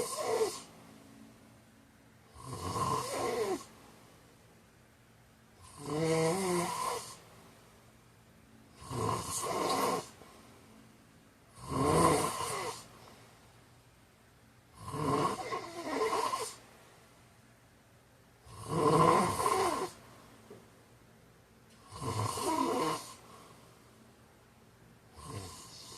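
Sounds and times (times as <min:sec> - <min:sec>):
man snoring: 0:00.0 - 0:00.7, 0:02.3 - 0:03.7, 0:05.6 - 0:07.2, 0:08.8 - 0:10.2, 0:11.5 - 0:12.9, 0:14.8 - 0:16.6, 0:18.5 - 0:20.0, 0:21.8 - 0:23.2, 0:25.1 - 0:25.9.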